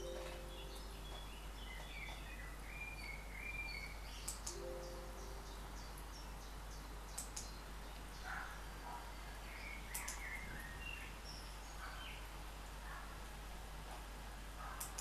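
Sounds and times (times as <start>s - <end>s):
small bird chirping: 0.0s - 12.3s
background hiss: 0.0s - 15.0s
lower steady tone: 3.1s - 6.6s.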